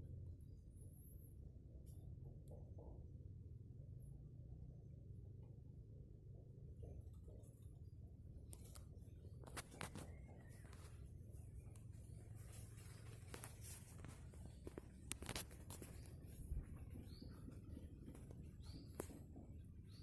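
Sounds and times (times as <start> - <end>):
low steady hum: 0.0 - 20.0
faint rustles and clicks: 6.8 - 20.0.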